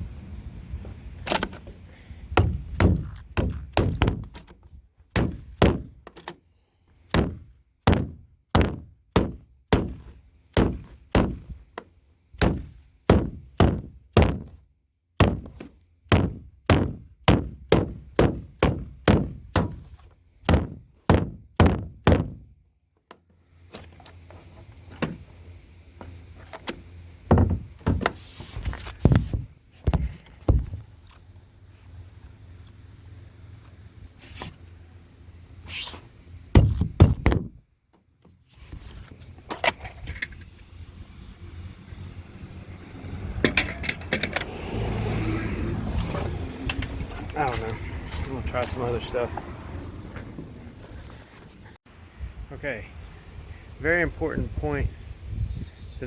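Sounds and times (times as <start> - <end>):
heavy thunks of trim being pounded: 2.3 - 4.3, 5.1 - 6.0, 7.1 - 11.5, 12.4 - 14.6, 15.2 - 19.8, 20.4 - 22.4, 27.2 - 28.2, 36.5 - 37.6.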